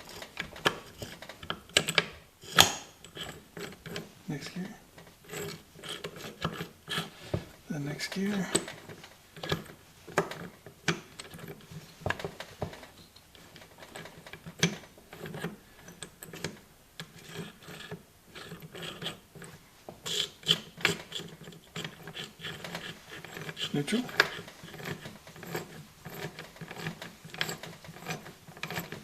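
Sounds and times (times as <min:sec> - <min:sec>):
gearbox metallic clicks and clunks: 0:20.1 - 0:29.0.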